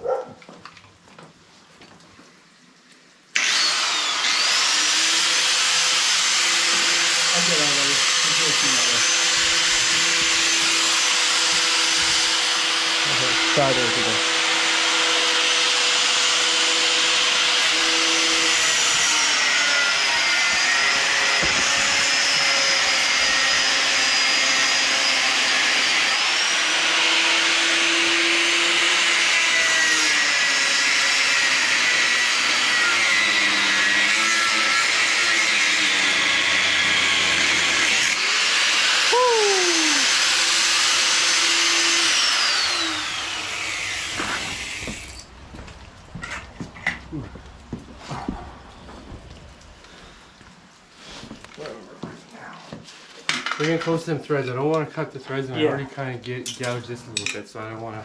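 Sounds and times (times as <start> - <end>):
grinder cutting steel: 3.4 - 45.4.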